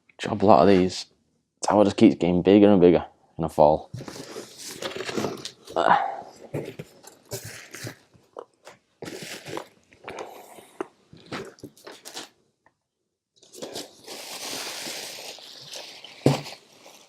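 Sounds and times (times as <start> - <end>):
plastic packaging crinkling: 6.9 - 10.4, 11.1 - 12.4, 13.4 - 17.0.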